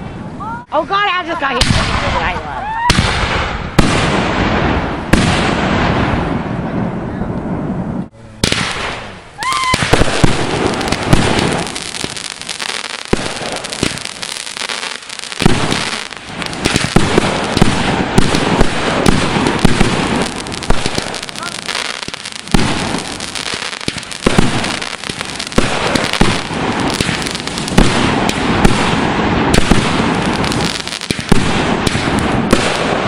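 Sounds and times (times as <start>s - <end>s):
fireworks bangs: 1.2s - 33.0s
rapid firework crackling: 8.4s - 33.0s
firework whistle: 9.4s - 10.1s.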